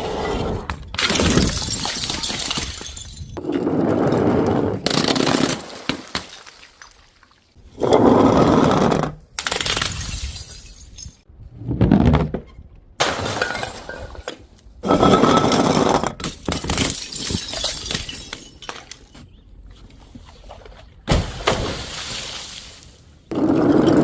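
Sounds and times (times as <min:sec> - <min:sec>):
glass bottles smashing: 0:01.0 - 0:03.4, 0:05.1 - 0:07.3, 0:09.6 - 0:11.3, 0:13.0 - 0:14.4, 0:15.0 - 0:19.2.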